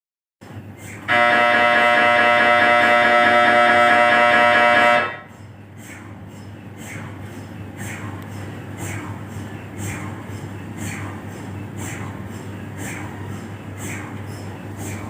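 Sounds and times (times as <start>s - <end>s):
mri scanner pulsing buzz: 1.1s - 5.4s.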